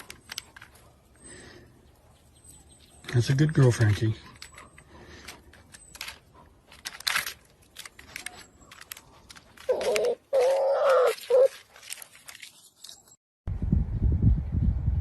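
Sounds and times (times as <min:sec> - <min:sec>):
animal calling: 0:09.6 - 0:11.6.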